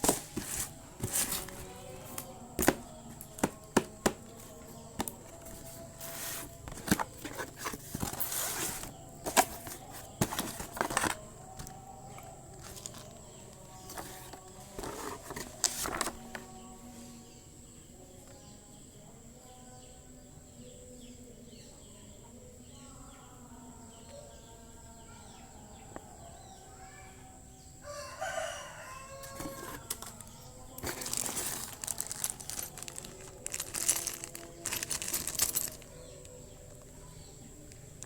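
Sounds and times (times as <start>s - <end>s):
crowing-like bird call: 27.8s - 29.6s.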